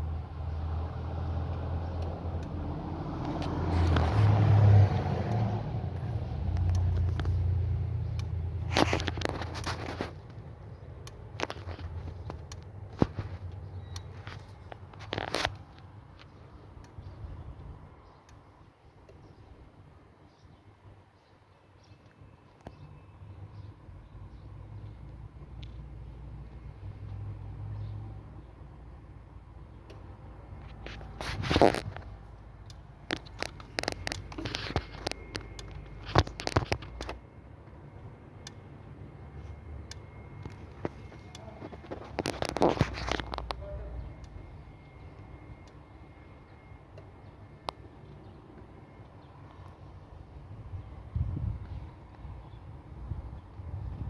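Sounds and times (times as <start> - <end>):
fuel injectors clicking: 1.5 - 4.3, 5.3 - 19.3, 29.7 - 37.2, 39.8 - 45.8.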